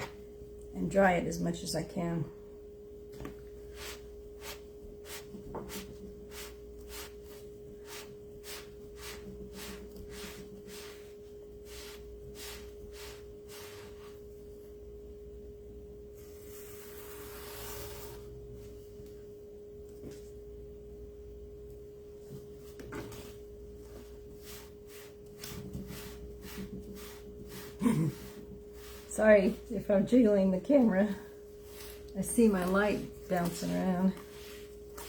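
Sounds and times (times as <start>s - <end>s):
steady high hum: 0.0s - 35.0s
cloth wiping a surface: 3.7s - 14.3s, 22.6s - 29.7s, 31.6s - 35.0s.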